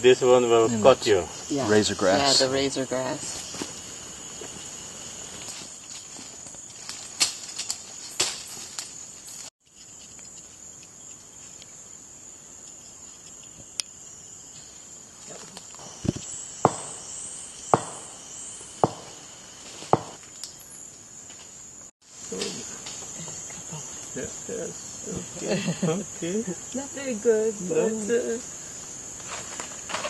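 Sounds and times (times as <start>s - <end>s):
insects buzzing: 0.0s - 30.0s
sharp knocks: 16.0s - 17.1s, 17.7s - 18.2s, 18.8s - 19.2s, 19.9s - 20.2s.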